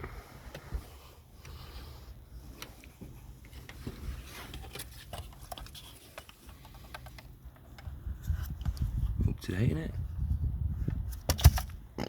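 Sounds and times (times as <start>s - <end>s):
rustling of things handled: 0.0s - 9.2s
small clicks and knocks: 4.5s - 8.9s.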